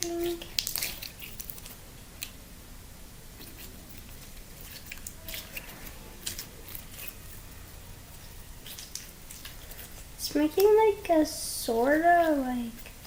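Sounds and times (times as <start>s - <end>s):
slime squelching when kneaded: 0.0s - 2.5s, 3.2s - 13.0s.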